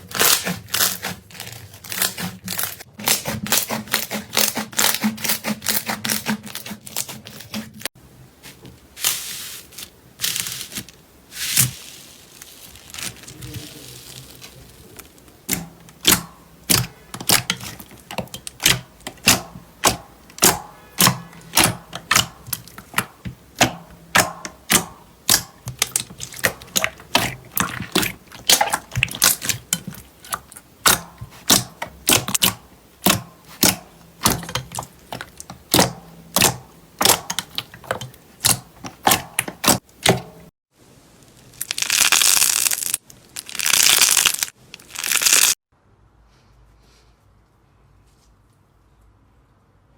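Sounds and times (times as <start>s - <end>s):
crackling crunches: 9.0s - 19.4s, 41.2s - 45.6s.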